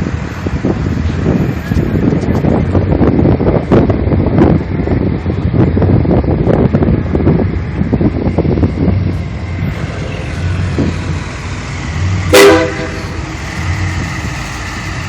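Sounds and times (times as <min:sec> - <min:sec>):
engine rumbling: 0:00.0 - 0:15.0
short horn toot: 0:12.3 - 0:13.1.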